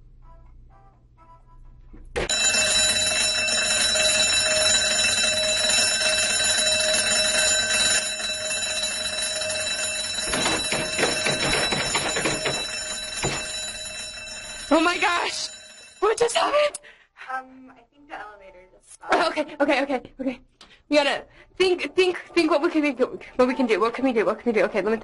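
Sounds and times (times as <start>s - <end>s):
electric alarm bell ringing: 2.3s - 16.4s
knocks: 10.2s - 13.8s.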